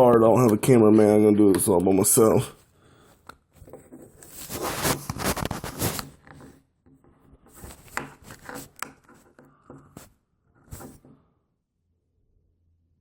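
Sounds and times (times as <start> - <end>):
hands rubbing and scraping objects: 3.8 - 6.6.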